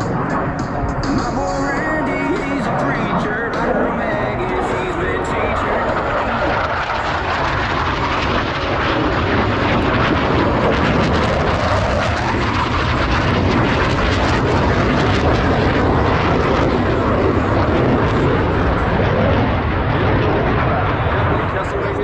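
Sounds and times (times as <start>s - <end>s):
jet fighters flying past: 0.0s - 22.0s.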